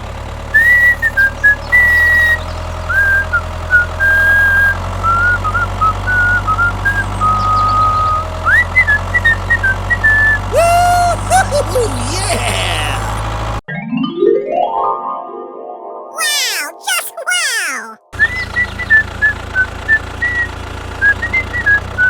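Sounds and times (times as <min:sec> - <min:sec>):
low engine hum: 0:00.0 - 0:11.3
person whistling a tune: 0:00.6 - 0:09.4, 0:10.0 - 0:13.0.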